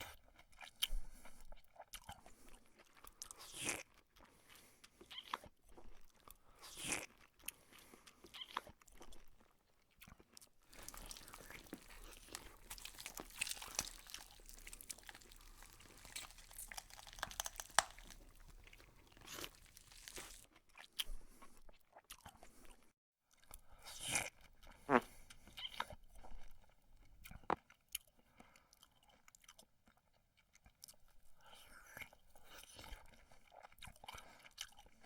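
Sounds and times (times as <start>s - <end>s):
chewing and crunching: 1.6s - 20.5s.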